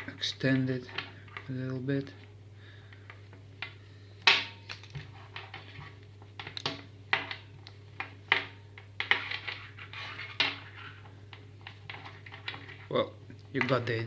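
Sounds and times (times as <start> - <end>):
low electrical hum: 0.0 - 14.0
cable rubbing and rustling: 4.7 - 6.6, 8.8 - 14.0.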